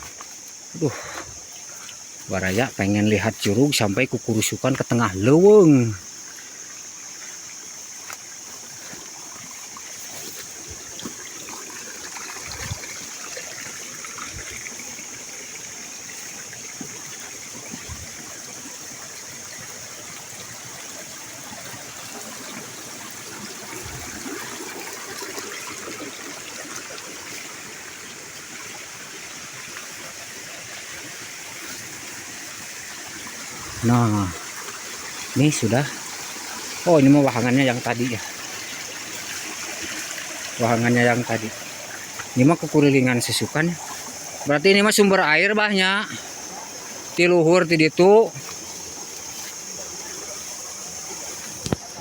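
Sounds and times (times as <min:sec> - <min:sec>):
high-pitched insect drone: 0:00.0 - 0:52.0
stream running over rocks: 0:00.0 - 0:52.0.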